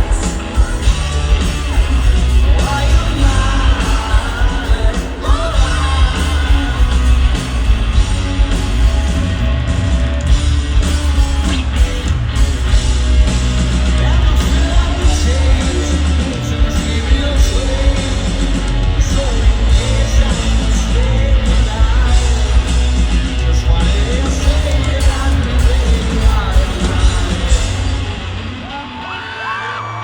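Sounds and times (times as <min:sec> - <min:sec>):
person singing: 0:00.0 - 0:07.8, 0:13.9 - 0:22.7
rock band playing live: 0:00.0 - 0:30.0.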